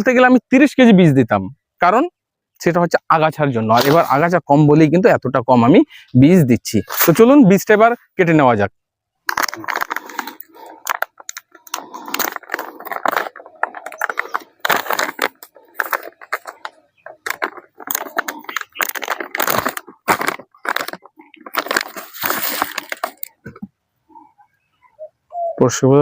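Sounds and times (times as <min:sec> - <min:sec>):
seed packet crinkling: 0:09.3 - 0:23.4.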